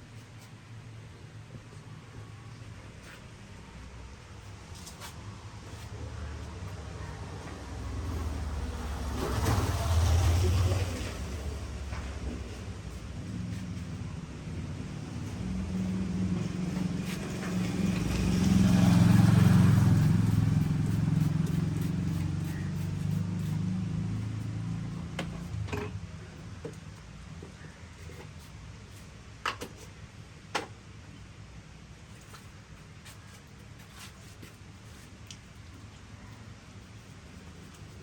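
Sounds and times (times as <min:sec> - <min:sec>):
vehicle engine passing by: 0:05.1 - 0:26.2.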